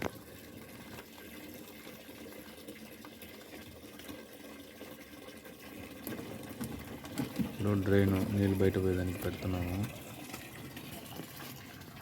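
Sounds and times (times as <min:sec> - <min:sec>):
water running in washing machine: 0:00.0 - 0:12.0.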